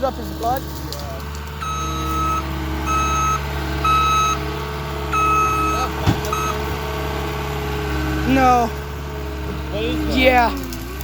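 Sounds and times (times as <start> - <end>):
engine humming: 0.0 - 11.0
vehicle backup alarm beeping: 1.6 - 6.7.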